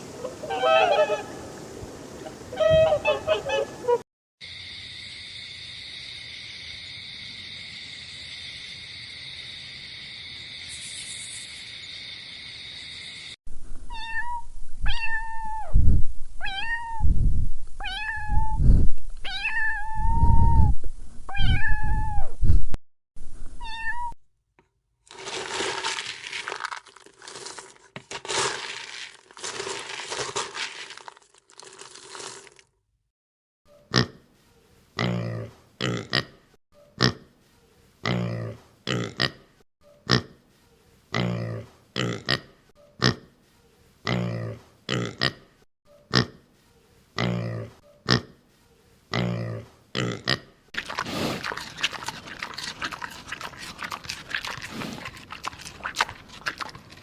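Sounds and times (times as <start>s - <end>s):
cat meowing: 13.9s - 15.7s, 16.4s - 17.0s, 17.8s - 18.6s, 19.2s - 20.3s, 23.6s - 24.2s.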